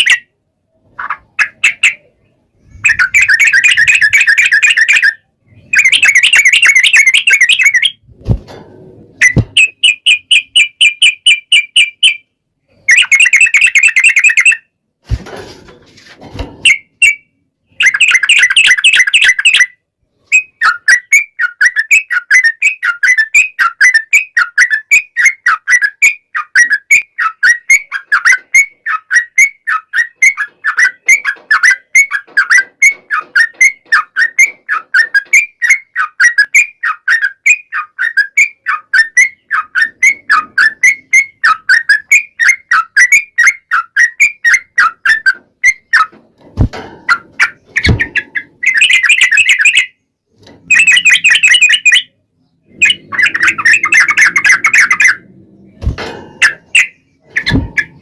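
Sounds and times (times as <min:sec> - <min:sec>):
bird chattering song: 0:01.0 - 0:08.0, 0:09.2 - 0:14.6, 0:16.6 - 0:19.8, 0:47.4 - 0:55.3, 0:56.4 - 0:58.0.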